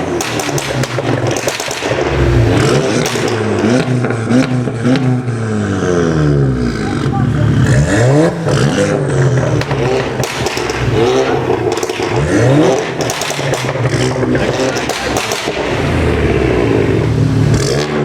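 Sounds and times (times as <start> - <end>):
car engine revving: 0.0 - 18.0
exhaust crackles and pops: 0.0 - 18.0.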